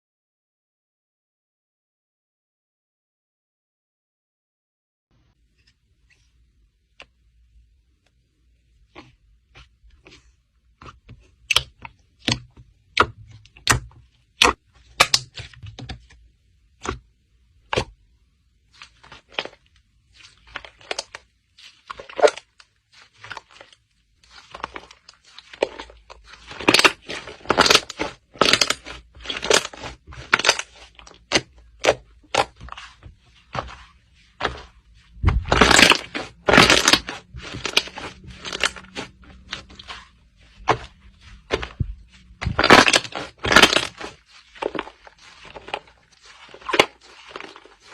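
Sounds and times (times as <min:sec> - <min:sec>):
slime clicking and popping: 0:11.5 - 0:15.4.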